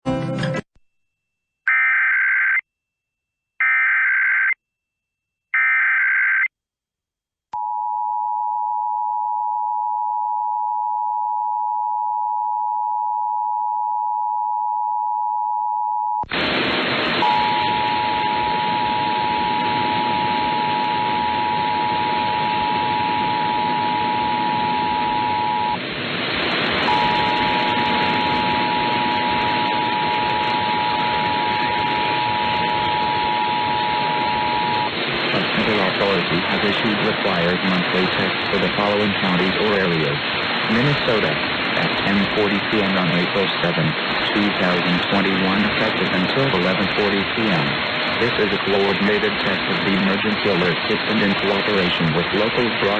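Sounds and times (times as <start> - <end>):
high two-tone alert signal: 26.9 - 34.9
loud hiss: 34.9 - 52.9.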